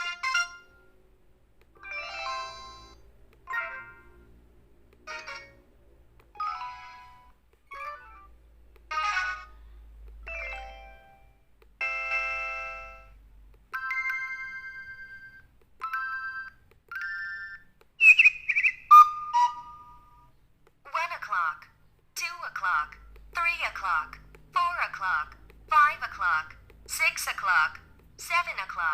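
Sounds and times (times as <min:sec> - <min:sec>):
phone alert tones and chimes: 0:01.8 - 0:04.2, 0:05.0 - 0:05.6, 0:06.4 - 0:08.3, 0:08.9 - 0:09.6, 0:10.2 - 0:17.7.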